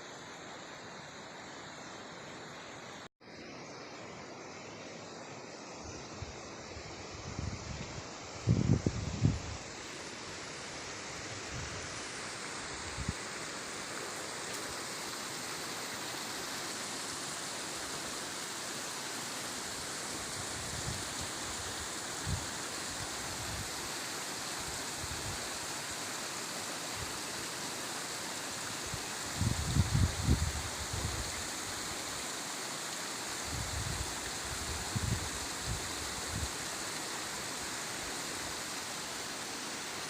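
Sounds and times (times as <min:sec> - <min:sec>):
stream flowing: 0:09.6 - 0:40.0.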